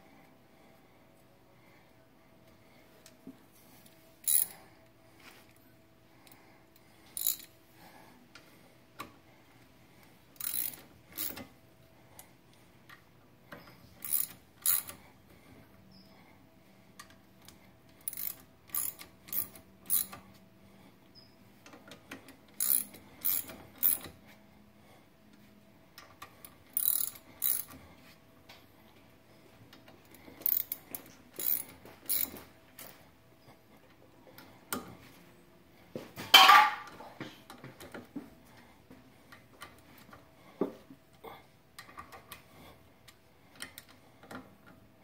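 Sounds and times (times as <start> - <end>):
ratchet wrench clicking: 4.2 - 4.5, 7.2 - 7.5, 10.4 - 11.4, 14.0 - 15.0, 18.0 - 20.2, 22.6 - 24.1, 26.8 - 27.8, 30.4 - 30.8, 31.4 - 32.4.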